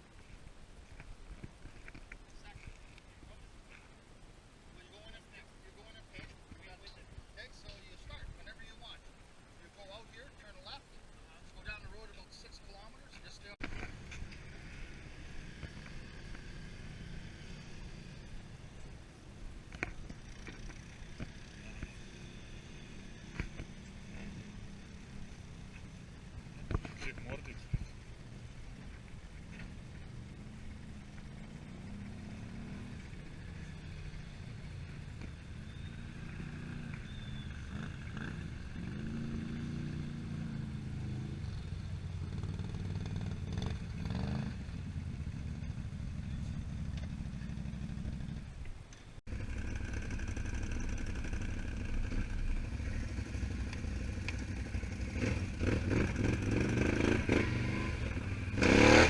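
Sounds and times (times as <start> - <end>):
atv engines running: 0.0 - 59.0.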